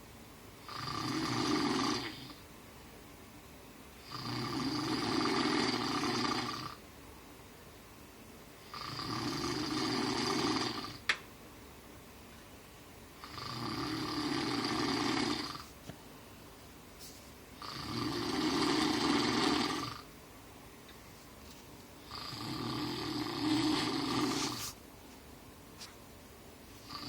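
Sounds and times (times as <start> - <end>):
rasping snores: 0.6 - 2.4, 4.0 - 6.8, 8.6 - 11.0, 13.2 - 15.7, 17.6 - 20.1, 22.0 - 24.8.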